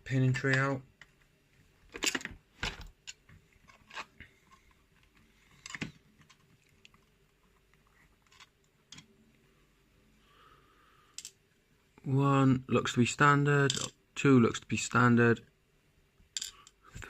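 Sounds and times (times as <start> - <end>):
small parts clicking and tapping: 1.9 - 7.0, 8.2 - 9.1, 11.1 - 11.4, 13.7 - 14.0, 16.3 - 16.8.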